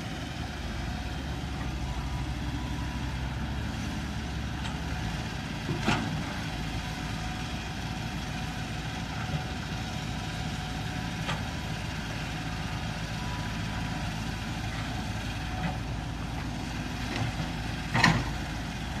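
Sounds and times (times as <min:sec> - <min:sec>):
excavator diesel engine running: 0:00.0 - 0:19.0.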